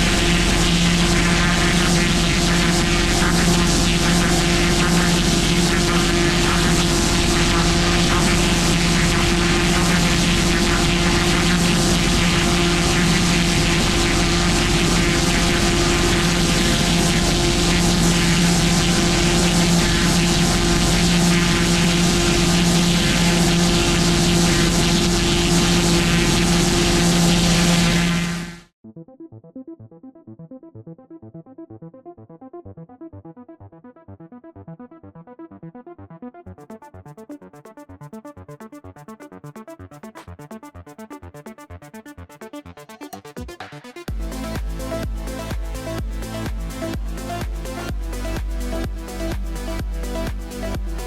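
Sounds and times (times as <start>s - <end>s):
pressure washer engine running: 0.0s - 28.6s.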